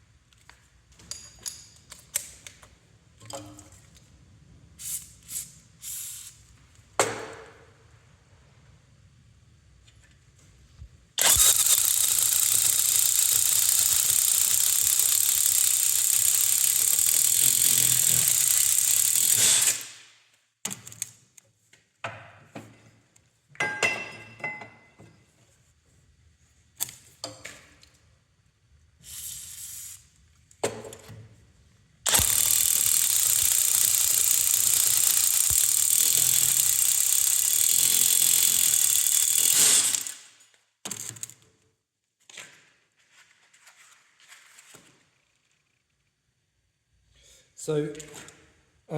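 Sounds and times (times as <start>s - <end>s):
impact wrench cutting steel plate: 11.2s - 20.0s, 32.1s - 40.3s.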